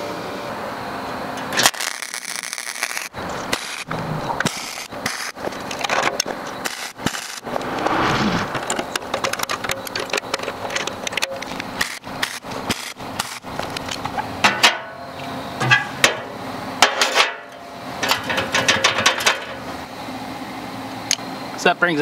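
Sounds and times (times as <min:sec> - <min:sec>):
metal parts clanking and scraping: 0:01.4 - 0:14.9, 0:16.8 - 0:19.6.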